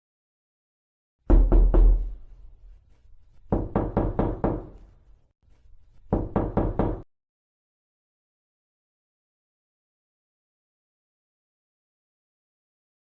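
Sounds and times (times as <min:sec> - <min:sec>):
knocking on a door: 0:01.3 - 0:02.2, 0:03.5 - 0:04.8, 0:06.1 - 0:07.1.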